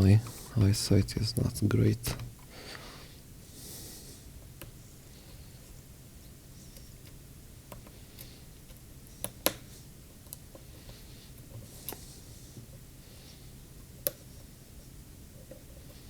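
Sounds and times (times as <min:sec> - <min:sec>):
faint steady hum: 0:00.0 - 0:16.0
light clicks and taps: 0:14.0 - 0:14.3.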